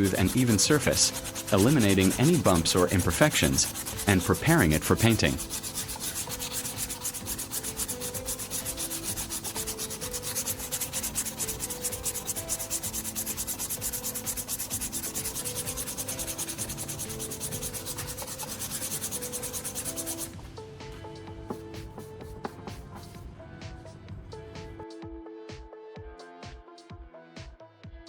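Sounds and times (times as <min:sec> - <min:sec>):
sandpaper rubbing: 0:00.0 - 0:20.3, 0:21.5 - 0:23.2.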